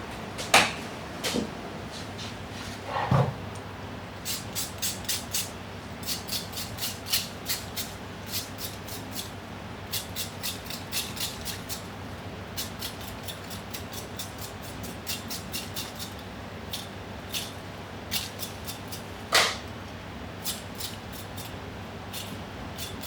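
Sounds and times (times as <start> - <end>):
steady low hum: 0.0 - 6.6.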